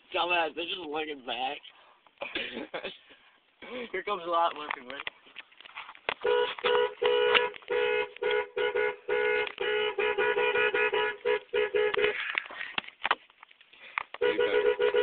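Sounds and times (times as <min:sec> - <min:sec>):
car horn short honks: 0:06.2 - 0:12.3, 0:14.2 - 0:15.0.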